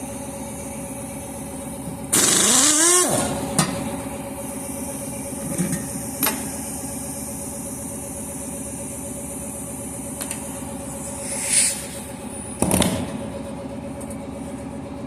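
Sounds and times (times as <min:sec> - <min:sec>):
hiss: 0:11.0 - 0:12.1.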